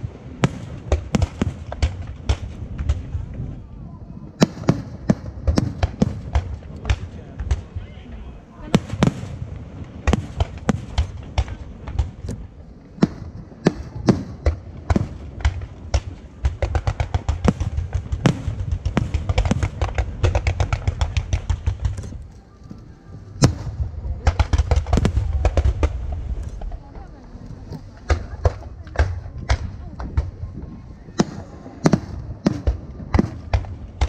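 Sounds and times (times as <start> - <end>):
aerial fireworks bangs: 13.0 - 22.1, 23.4 - 27.0.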